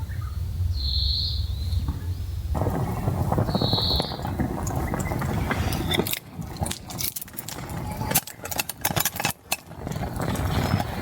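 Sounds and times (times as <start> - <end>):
steady low rumble: 0.0 - 11.0
dense crackling noise: 2.5 - 11.0
bird whistling: 3.5 - 4.2.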